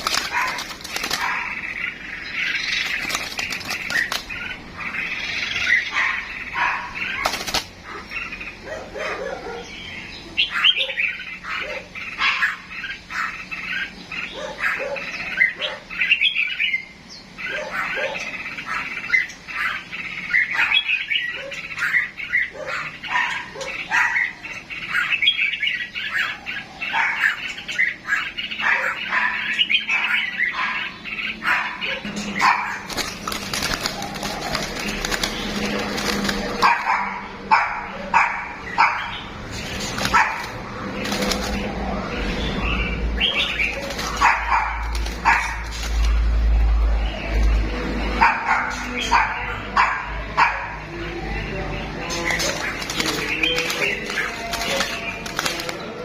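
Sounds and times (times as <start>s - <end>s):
cage birds chirping: 0.0s - 56.0s.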